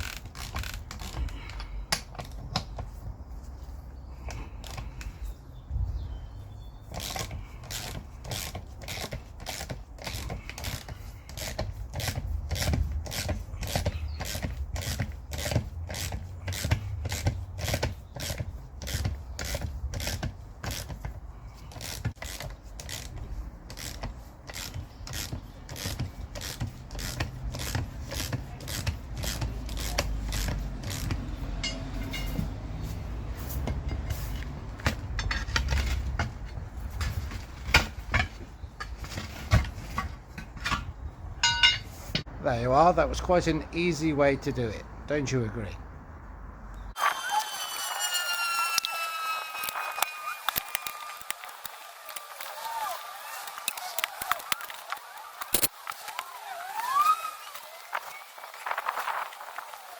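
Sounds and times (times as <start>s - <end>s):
wrench ratchet clicks: 53.3s - 55.7s.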